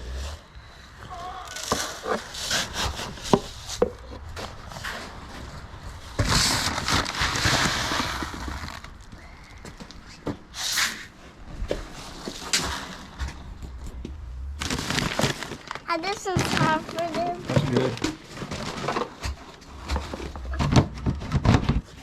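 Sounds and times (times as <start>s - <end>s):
knocks and scrapes of feed bucket: 16.2s - 22.0s.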